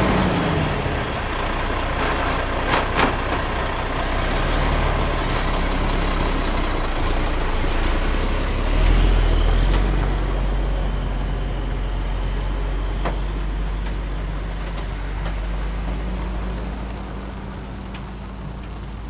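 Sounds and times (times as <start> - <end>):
heavy truck engine rumbling: 0.0 - 19.0
faint clicks: 13.0 - 19.0.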